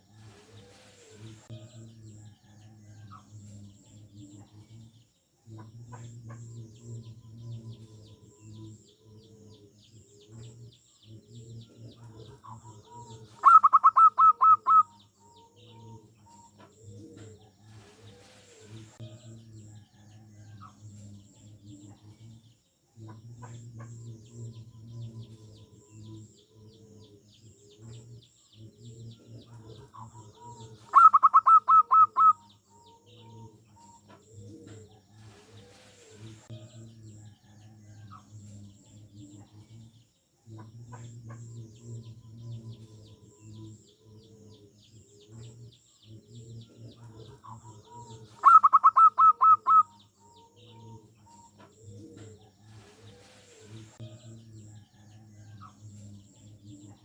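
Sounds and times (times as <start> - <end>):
dove cooing: 5.6 - 19.0, 23.1 - 36.4, 40.6 - 54.0.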